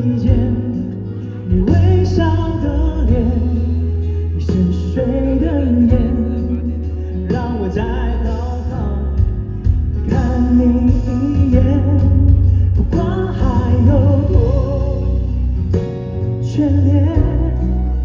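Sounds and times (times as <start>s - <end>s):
band accompaniment with bass: 0.0s - 18.0s
person singing pop ballad: 0.0s - 18.0s.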